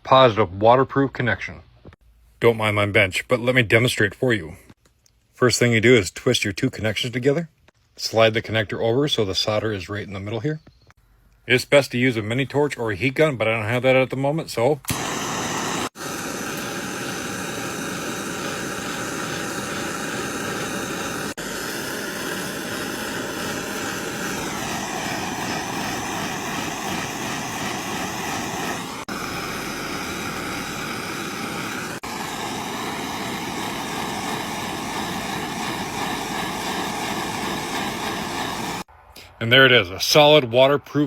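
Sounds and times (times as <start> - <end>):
hot-air blower whining: 14.8 - 38.9.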